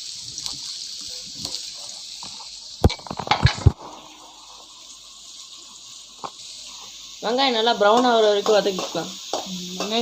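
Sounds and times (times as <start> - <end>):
onions sizzling in hot oil: 0.0 - 10.0
spoon scraping a pan: 7.8 - 10.0.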